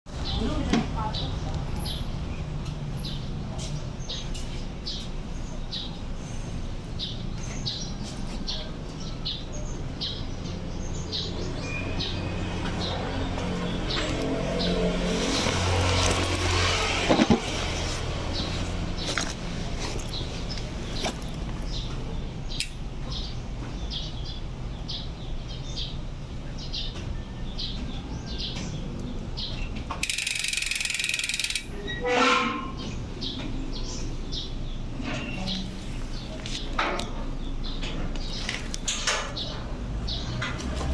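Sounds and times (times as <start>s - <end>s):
bike hub clicking: 30.0s - 31.8s.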